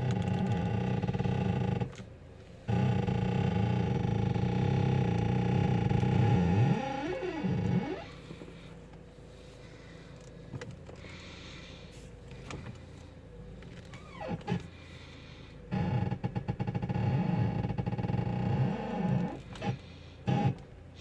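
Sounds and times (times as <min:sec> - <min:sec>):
suspension squeaking: 0:00.0 - 0:11.4, 0:12.3 - 0:21.0
faint engine idle: 0:00.0 - 0:21.0.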